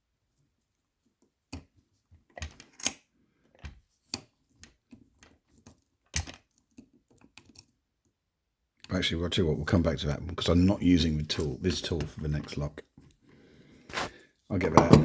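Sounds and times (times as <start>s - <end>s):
lock picking tools clicking: 2.6s - 3.0s.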